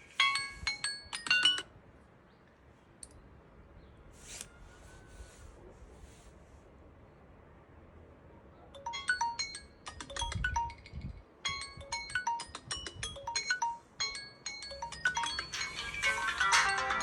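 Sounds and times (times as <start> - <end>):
marimba-like phone alarm tone: 13.1 - 17.0.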